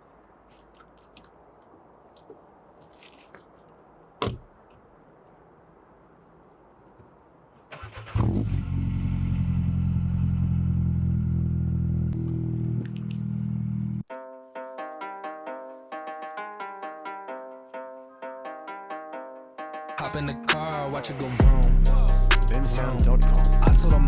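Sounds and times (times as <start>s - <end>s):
car engine idling: 7.8s - 14.0s.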